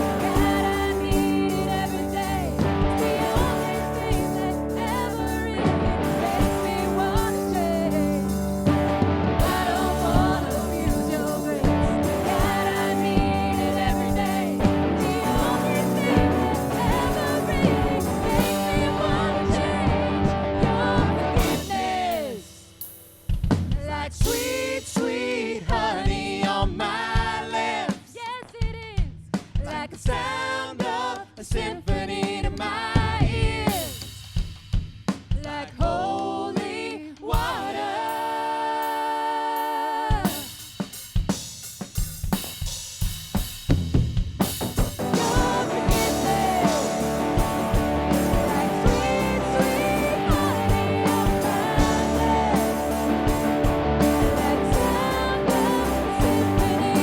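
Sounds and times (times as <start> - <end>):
person singing: 0.0 - 8.5, 9.4 - 22.6, 45.0 - 57.0
worship band playing: 0.0 - 23.3, 44.7 - 57.0
drum kit: 0.0 - 57.0.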